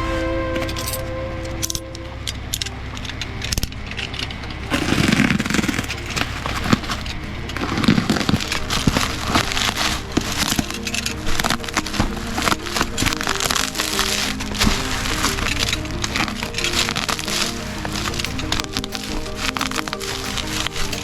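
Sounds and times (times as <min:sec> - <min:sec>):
background music: 0:00.0 - 0:21.0
sharp clicks and crackling handling: 0:01.6 - 0:21.0.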